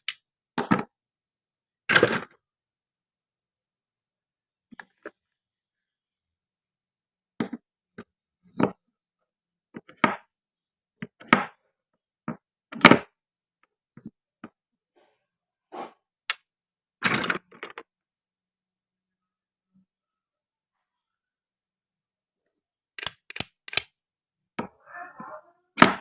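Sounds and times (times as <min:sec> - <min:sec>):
toy fruit clacks and knocks: 0:23.0 - 0:23.9.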